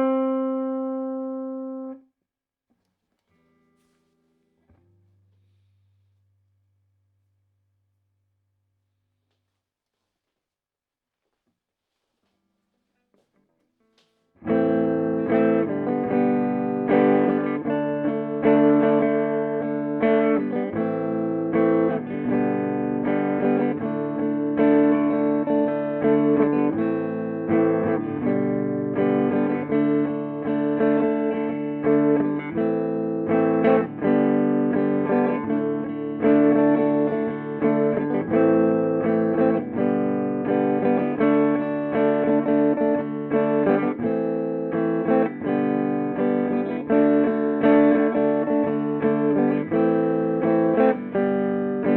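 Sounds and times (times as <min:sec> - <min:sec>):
electric guitar chords and notes: 0:00.0 - 0:02.0, 0:13.9 - 0:51.9.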